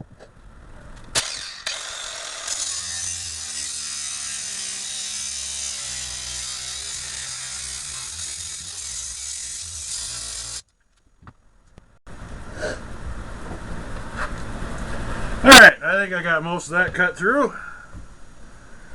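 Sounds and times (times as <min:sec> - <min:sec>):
angle grinder cutting metal: 0:01.2 - 0:10.6.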